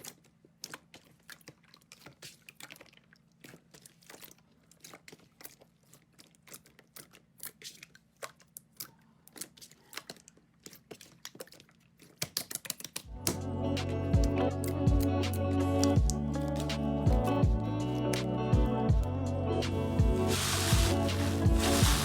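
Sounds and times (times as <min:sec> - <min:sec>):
slime clicking and popping: 0:06.4 - 0:13.1
music: 0:13.1 - 0:22.0.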